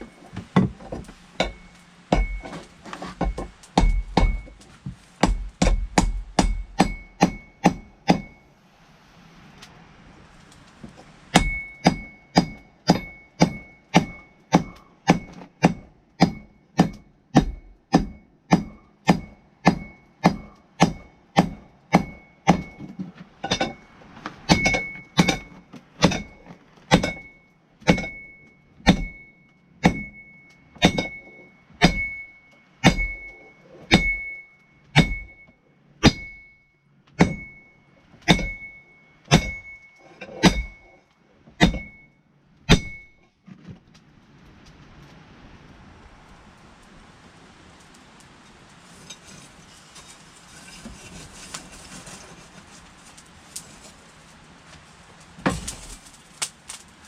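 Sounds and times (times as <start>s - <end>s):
anvil ringing: 1.4s - 2.6s, 3.2s - 4.6s, 5.2s - 8.5s, 11.3s - 23.9s, 24.5s - 41.0s, 41.6s - 43.2s
hammer striking steel on anvil: 1.4s - 2.6s, 3.2s - 4.6s, 5.2s - 8.4s, 11.3s - 23.8s, 24.5s - 36.6s, 37.2s - 41.0s, 41.6s - 43.2s.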